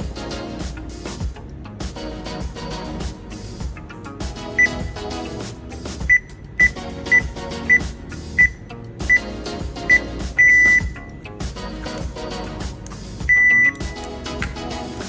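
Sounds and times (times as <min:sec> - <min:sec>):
background music: 0:00.0 - 0:15.0
keypad beeps: 0:06.1 - 0:07.2, 0:13.3 - 0:14.0.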